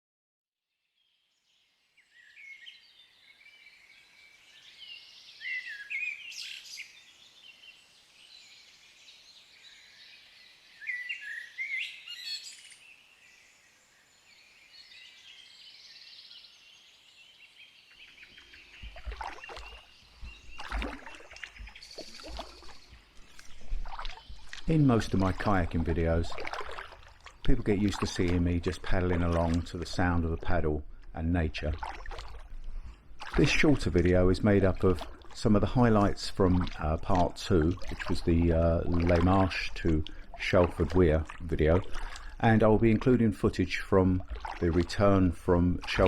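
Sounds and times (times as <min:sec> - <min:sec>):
songbirds singing: 0:01.0 - 0:46.0
irregular knocks and low bumps: 0:18.8 - 0:43.2.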